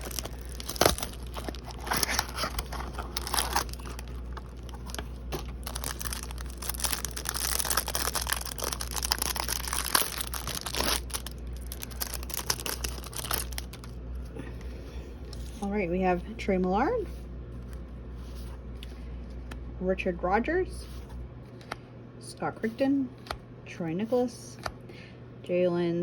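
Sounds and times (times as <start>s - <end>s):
card wrappers tearing and crinkling: 0.0s - 14.0s.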